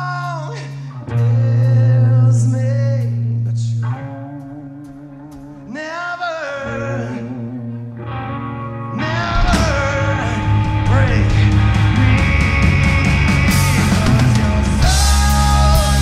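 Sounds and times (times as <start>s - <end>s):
person singing: 0.0s - 8.0s, 8.7s - 16.0s
live rock band: 0.0s - 16.0s
drums and cymbals: 9.5s - 16.0s.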